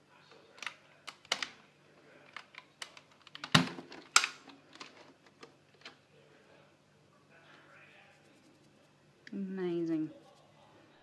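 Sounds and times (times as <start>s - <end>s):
hard objects clicking and knocking: 0.6s - 1.6s, 2.2s - 6.0s.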